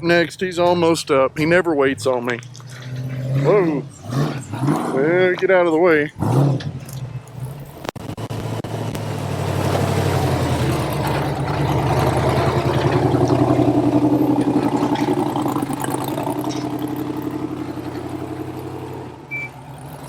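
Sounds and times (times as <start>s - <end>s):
off-road engine under load: 0.0s - 20.0s
loud unmuffled exhaust: 6.0s - 20.0s.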